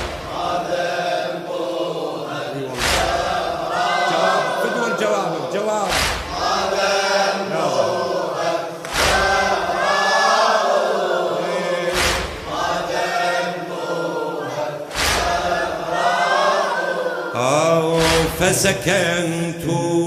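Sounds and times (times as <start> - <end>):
group chanting in unison: 0.0 - 20.0
chest-beating slaps: 2.7 - 3.9, 5.8 - 7.0, 8.7 - 10.0, 11.9 - 13.0, 14.9 - 16.0, 17.9 - 18.8.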